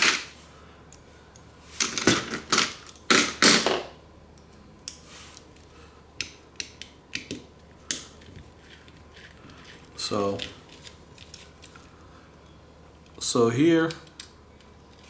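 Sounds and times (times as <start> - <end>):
metal bits clattering and scraping: 0.0 - 0.3.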